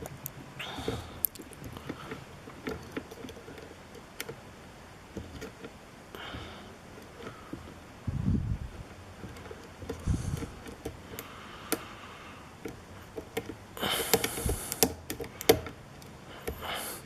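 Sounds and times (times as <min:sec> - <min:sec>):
lock pick clicking and scraping: 0:00.0 - 0:04.4, 0:05.1 - 0:05.8, 0:09.2 - 0:11.9, 0:12.5 - 0:16.8.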